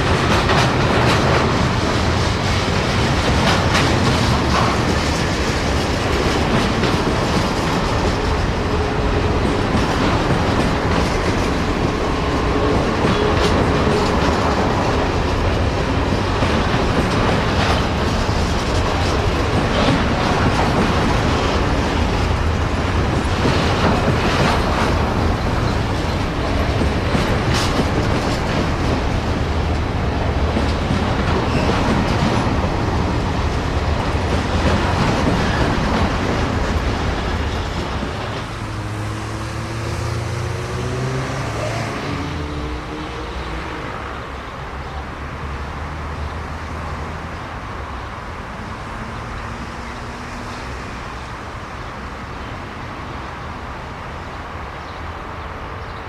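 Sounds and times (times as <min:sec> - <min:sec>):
train wheels rumbling on rails: 0:00.0 - 0:56.0
engine hum sliding in pitch: 0:38.4 - 0:43.9.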